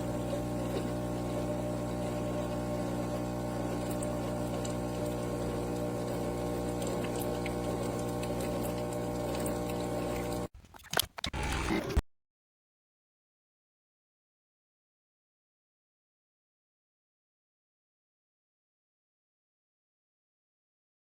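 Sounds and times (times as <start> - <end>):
coffee maker pump humming: 0.0 - 10.5.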